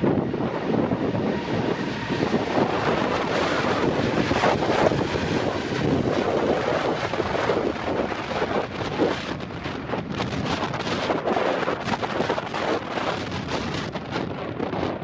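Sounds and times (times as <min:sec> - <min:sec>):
jet engines rumbling: 0:00.0 - 0:15.0
wind buffeting microphone: 0:00.0 - 0:15.0.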